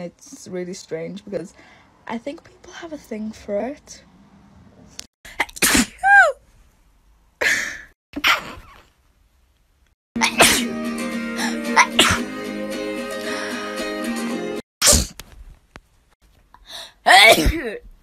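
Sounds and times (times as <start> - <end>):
person sneezing: 5.4 - 6.1, 10.2 - 10.8, 11.4 - 12.3, 14.8 - 15.2
background music: 10.2 - 14.6.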